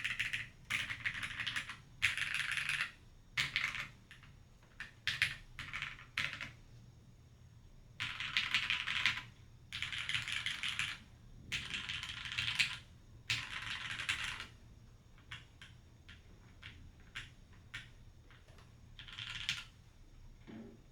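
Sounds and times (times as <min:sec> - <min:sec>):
mechanical keyboard typing: 0:00.0 - 0:04.2, 0:09.8 - 0:11.0, 0:11.6 - 0:14.5, 0:16.6 - 0:19.7.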